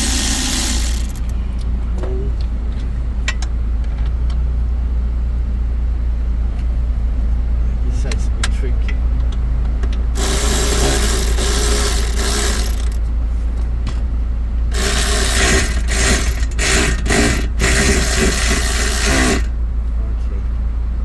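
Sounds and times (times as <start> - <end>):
power tool whirring and clicking: 0.0 - 1.4, 10.2 - 13.0, 14.7 - 19.5.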